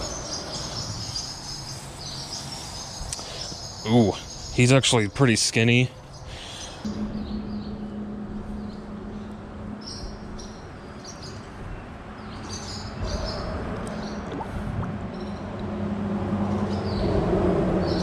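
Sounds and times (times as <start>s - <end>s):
small birds chirping: 0.0s - 7.8s
outdoor background noise: 0.0s - 18.0s
steady low hum: 6.0s - 17.9s.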